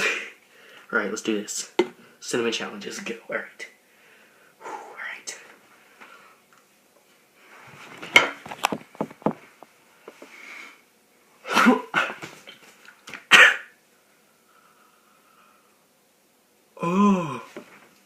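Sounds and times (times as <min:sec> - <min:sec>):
person coughing hard: 0:11.4 - 0:12.3, 0:13.3 - 0:13.8.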